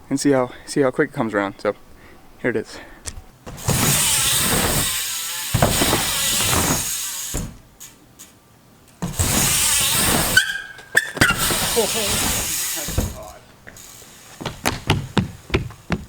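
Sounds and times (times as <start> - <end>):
bike landing on ramp: 3.4 - 8.3, 9.0 - 16.0
bike tyres rumbling on wooden boards: 3.4 - 8.4, 9.0 - 16.0.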